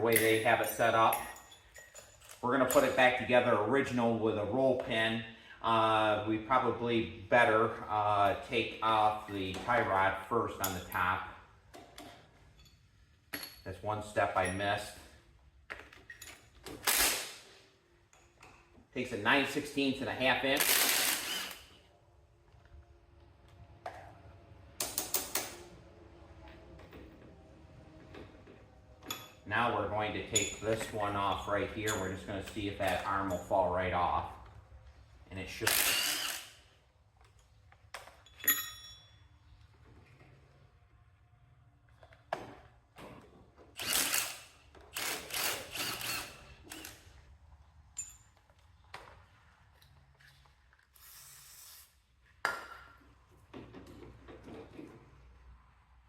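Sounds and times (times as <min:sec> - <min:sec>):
metal clinks: 0:00.0 - 0:03.0, 0:12.4 - 0:13.8, 0:30.3 - 0:33.6, 0:38.1 - 0:39.4, 0:47.9 - 0:48.4
metal tools clicking: 0:00.0 - 0:03.0, 0:30.3 - 0:33.6
sharp metal clinks: 0:00.0 - 0:03.0, 0:38.3 - 0:39.2
rapid ratchet clicking: 0:20.6 - 0:21.7, 0:43.8 - 0:47.0.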